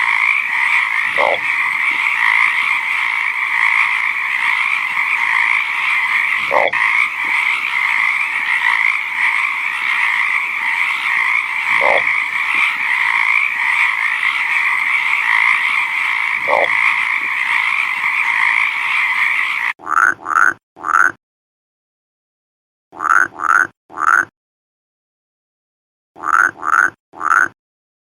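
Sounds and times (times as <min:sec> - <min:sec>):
chorus of frogs calling: 0:00.0 - 0:21.0
single frog rising calls: 0:00.0 - 0:21.1.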